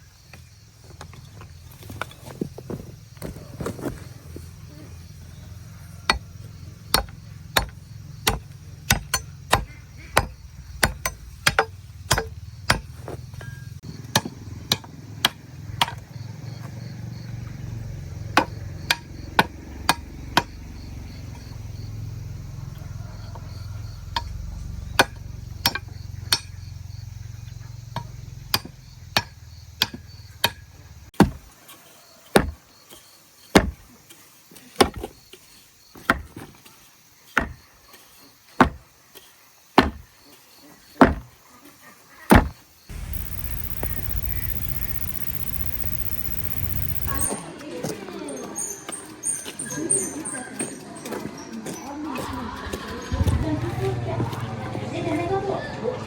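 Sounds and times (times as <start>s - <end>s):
machete chopping sugarcane: 6.9s - 16.0s, 18.4s - 20.6s, 28.0s - 30.6s, 31.2s - 31.5s, 33.5s - 33.8s, 39.8s - 40.1s, 41.0s - 41.3s, 42.3s - 44.2s.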